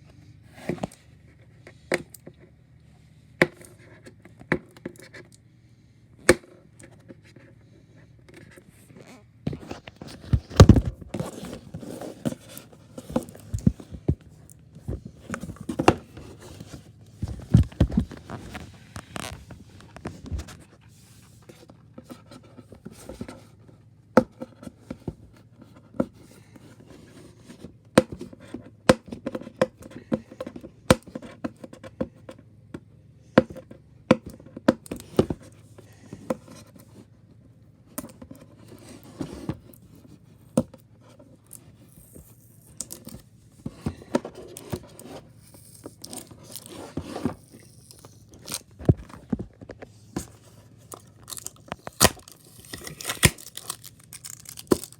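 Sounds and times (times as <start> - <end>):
packaging scraping and rustling: 8.8 - 23.5, 41.2 - 54.9
packaging clicks and knocks: 45.8 - 54.9
packaging tearing: 51.0 - 54.9.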